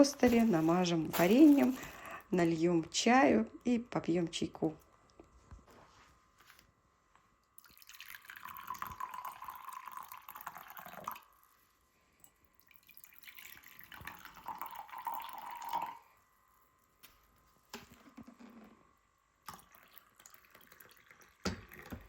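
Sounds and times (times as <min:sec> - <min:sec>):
water pouring into a vessel: 0:07.6 - 0:11.5, 0:12.5 - 0:16.1, 0:19.5 - 0:22.0.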